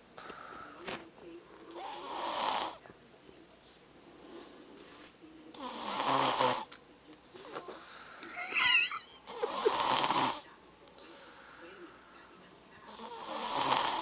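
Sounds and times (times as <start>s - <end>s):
child snoring: 5.6s - 6.7s, 8.3s - 10.4s, 13.0s - 14.0s.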